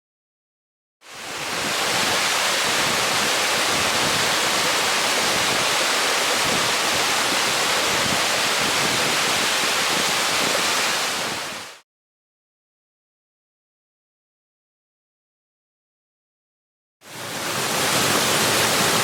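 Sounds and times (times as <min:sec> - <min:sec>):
waterfall rushing: 0:01.1 - 0:11.8, 0:17.0 - 0:19.0.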